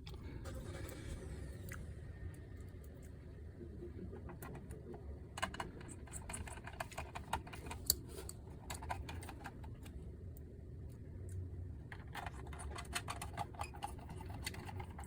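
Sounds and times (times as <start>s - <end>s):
low steady hum: 0.0s - 15.0s
small parts and tools clicking: 4.2s - 15.0s.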